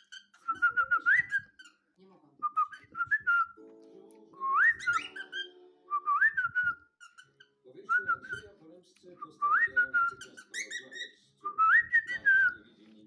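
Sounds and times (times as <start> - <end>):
cockatiel whistling: 0.0 - 1.7, 4.4 - 8.5, 9.3 - 12.6.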